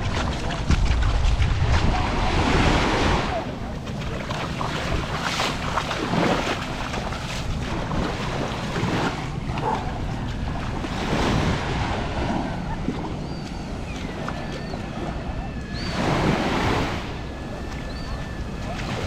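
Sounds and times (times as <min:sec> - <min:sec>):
waves washing onto beach: 0:00.0 - 0:19.0
wind buffeting microphone: 0:00.0 - 0:19.0.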